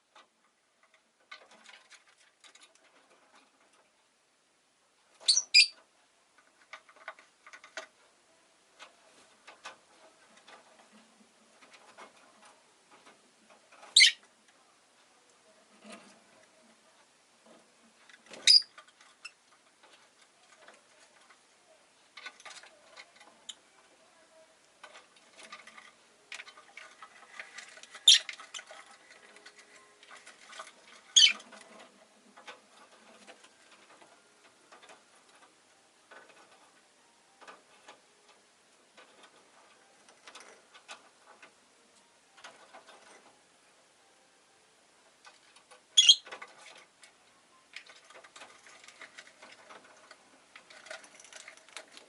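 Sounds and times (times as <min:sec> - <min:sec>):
soft scratching and tapping: 0:00.0 - 0:04.0, 0:05.8 - 0:43.4, 0:45.2 - 0:52.0
lovebird sharp high calls: 0:05.3 - 0:05.7, 0:14.0 - 0:14.2, 0:18.4 - 0:18.7, 0:31.2 - 0:31.4, 0:46.0 - 0:46.2.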